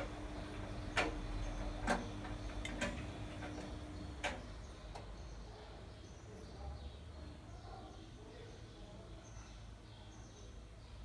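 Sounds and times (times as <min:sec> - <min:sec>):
washing machine clicks: 0:00.9 - 0:05.1.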